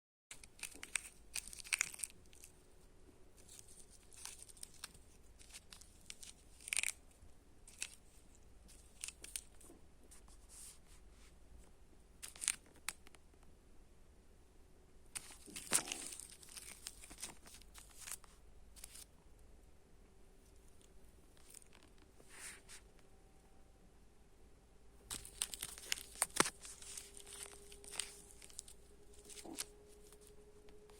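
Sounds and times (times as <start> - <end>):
candy wrapper crinkling: 0.3 - 2.7, 3.4 - 9.7, 12.2 - 13.1, 15.2 - 19.1, 25.1 - 30.9.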